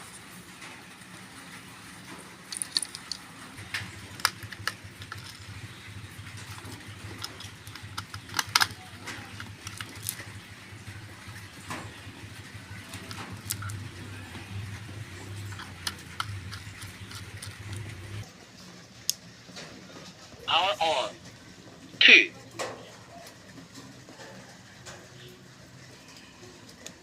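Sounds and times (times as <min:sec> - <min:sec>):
walkie-talkie clicks and knocks: 0:06.5 - 0:10.2.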